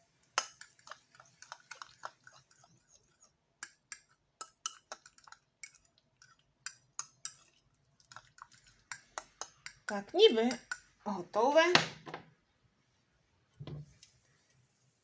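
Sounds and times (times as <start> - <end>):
fork clinking against bowl: 3.6 - 10.9.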